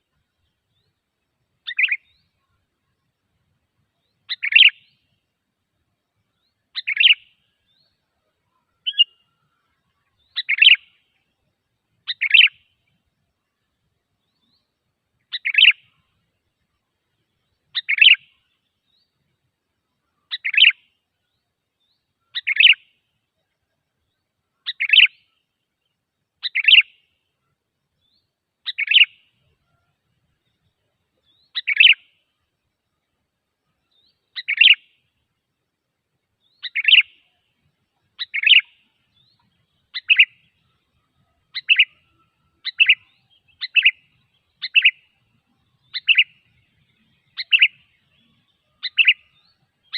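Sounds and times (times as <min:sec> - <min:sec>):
bird chirping calls: 0:01.6 - 0:02.7, 0:04.0 - 0:05.1, 0:06.4 - 0:11.4, 0:12.0 - 0:13.0, 0:14.2 - 0:16.2, 0:17.3 - 0:19.2, 0:20.0 - 0:23.6, 0:24.2 - 0:25.5, 0:26.4 - 0:27.1, 0:28.0 - 0:32.3, 0:33.7 - 0:35.0, 0:36.4 - 0:49.9.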